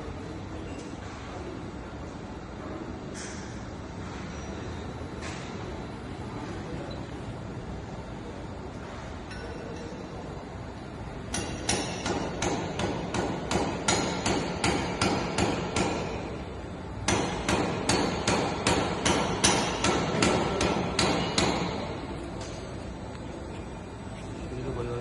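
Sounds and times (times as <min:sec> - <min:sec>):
rapid hammer-like knocks: 0:11.3 - 0:16.3, 0:17.1 - 0:21.9.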